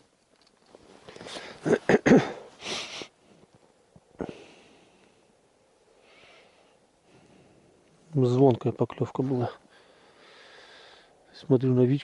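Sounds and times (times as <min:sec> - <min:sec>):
person sniffing and snorting: 0:02.6 - 0:03.1.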